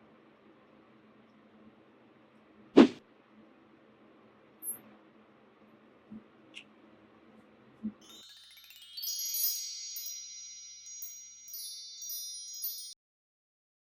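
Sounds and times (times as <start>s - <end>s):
chimes ringing: 8.0s - 13.0s.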